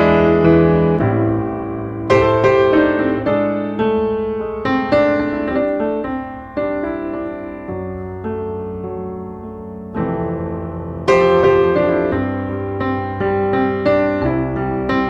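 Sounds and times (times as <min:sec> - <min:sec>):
slow piano chords: 0:00.0 - 0:15.0.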